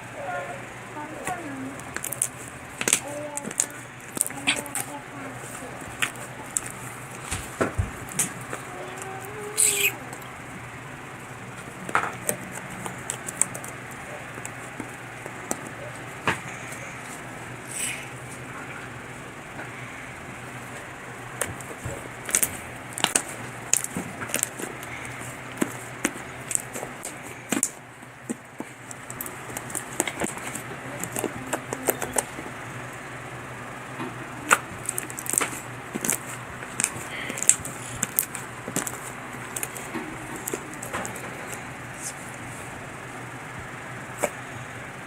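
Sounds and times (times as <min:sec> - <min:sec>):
steady low hum: 0:00.0 - 0:45.0
crackle: 0:01.3 - 0:05.0, 0:21.4 - 0:32.3, 0:34.5 - 0:41.7.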